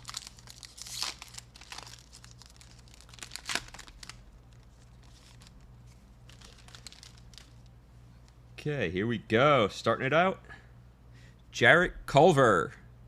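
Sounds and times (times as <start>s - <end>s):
foil pack tearing and crinkling: 0.0s - 7.7s.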